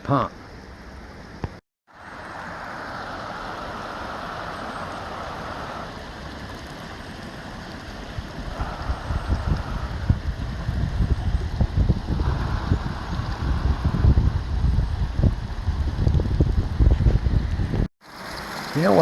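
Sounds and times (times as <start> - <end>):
water spraying from sprinklers: 2.0 - 17.0, 18.0 - 19.0
wind buffeting microphone: 7.2 - 19.0.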